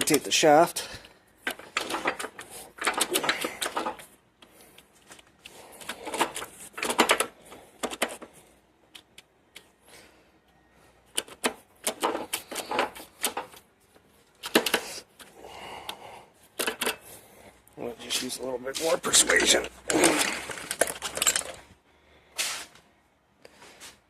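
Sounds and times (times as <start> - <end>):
tractor transmission metallic clicking: 1.4 - 8.2, 11.1 - 13.7, 19.1 - 21.6.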